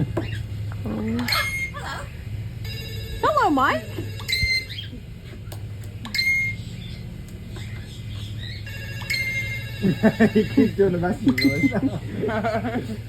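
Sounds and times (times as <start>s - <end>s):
bird chirping like notification tone: 4.1s - 5.0s, 6.0s - 10.7s, 11.3s - 11.8s.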